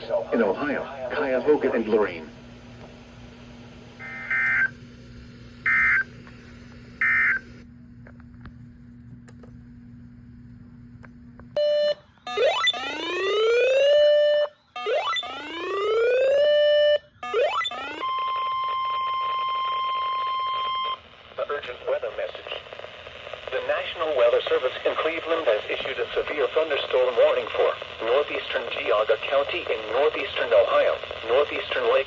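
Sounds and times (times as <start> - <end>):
rising whooping alarm sweeps: 11.6 - 21.0
steady warning alarm tone: 11.6 - 21.0.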